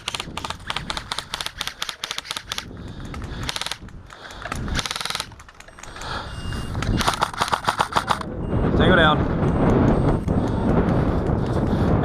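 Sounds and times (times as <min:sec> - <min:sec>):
airsoft rifle full-auto bursts: 0:00.0 - 0:02.7, 0:03.4 - 0:03.8, 0:04.8 - 0:05.4, 0:07.0 - 0:08.2.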